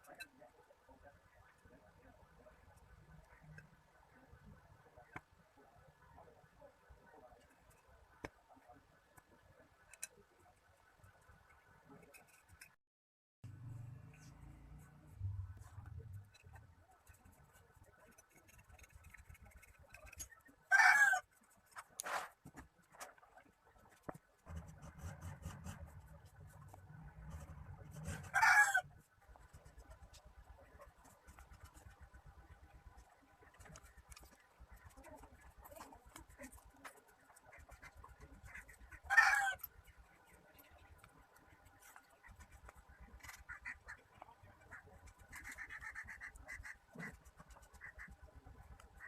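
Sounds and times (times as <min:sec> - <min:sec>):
faint clicks and handling noises: 0:06.4 - 0:12.8, 0:29.1 - 0:38.9, 0:39.6 - 0:49.0.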